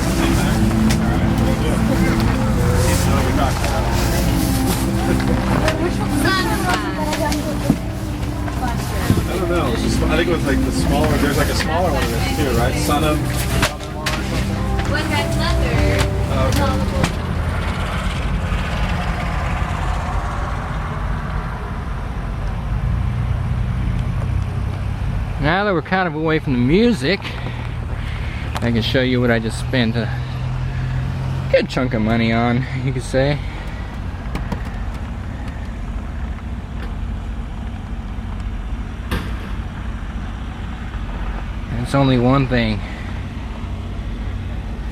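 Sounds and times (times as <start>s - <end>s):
short broadband noise: 0.0s - 17.5s
engine idling: 0.0s - 25.4s, 26.3s - 44.9s
motor vehicle running: 0.0s - 44.9s.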